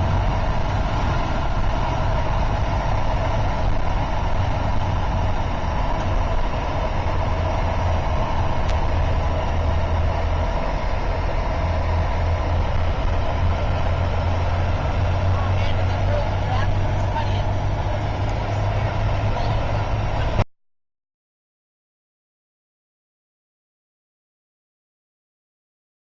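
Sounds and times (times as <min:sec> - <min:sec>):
engine running with low hum: 0:00.0 - 0:20.5.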